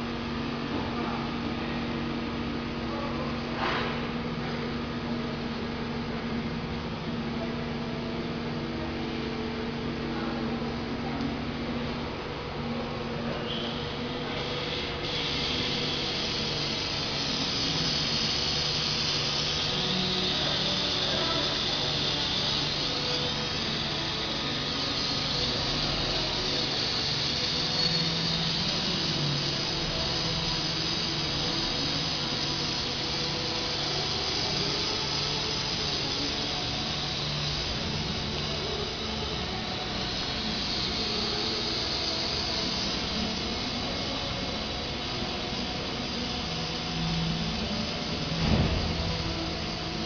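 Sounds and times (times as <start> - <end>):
high whirring hiss: 0.0 - 50.0.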